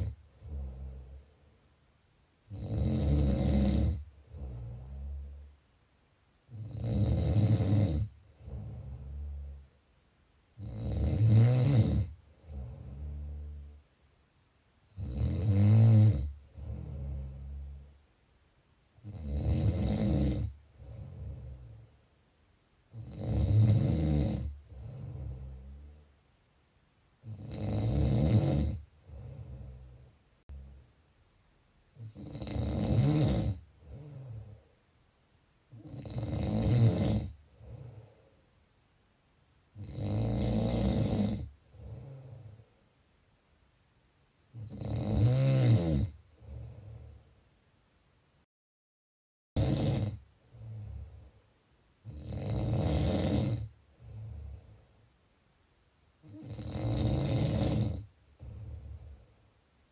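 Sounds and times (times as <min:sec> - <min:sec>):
loud rattling snores: 0:00.0 - 0:01.3, 0:02.5 - 0:05.4, 0:06.5 - 0:09.6, 0:10.6 - 0:13.7, 0:14.9 - 0:17.9, 0:19.0 - 0:21.8, 0:22.9 - 0:25.9, 0:27.2 - 0:30.8, 0:32.0 - 0:34.6, 0:35.7 - 0:38.2, 0:39.8 - 0:42.6, 0:44.5 - 0:47.1, 0:49.6 - 0:51.1, 0:52.0 - 0:54.6, 0:56.2 - 0:59.1.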